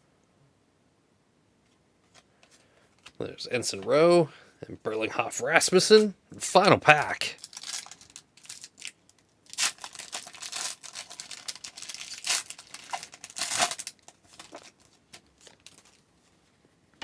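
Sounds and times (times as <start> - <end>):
wrapper tearing and crinkling: 7.3 - 16.0.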